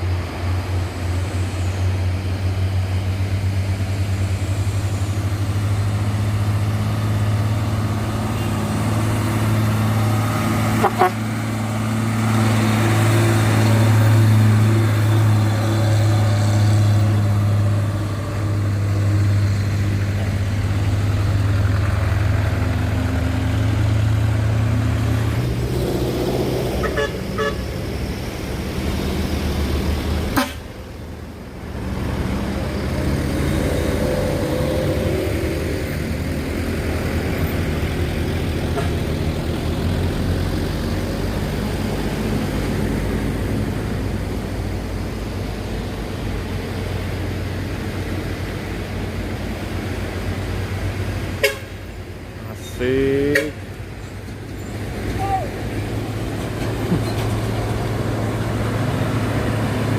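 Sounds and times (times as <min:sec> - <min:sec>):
diesel engine droning: 0:00.0 - 0:59.9
road traffic: 0:00.0 - 0:59.9
short horn toots: 0:10.8 - 0:11.2, 0:26.8 - 0:27.7.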